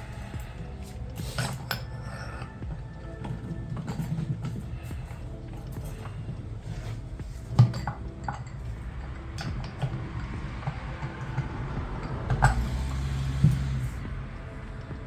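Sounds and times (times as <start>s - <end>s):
metal parts clicking and knocking: 0.0s - 14.1s
steady low hum: 0.0s - 15.0s.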